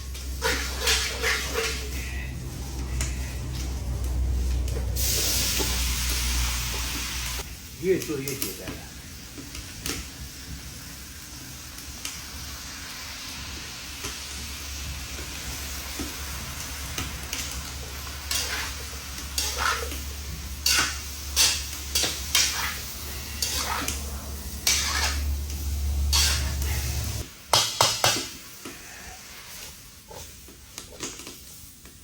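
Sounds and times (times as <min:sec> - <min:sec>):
food sizzling in oil: 0:00.0 - 0:32.0
spatula scraping pan: 0:00.2 - 0:03.9, 0:17.9 - 0:27.2.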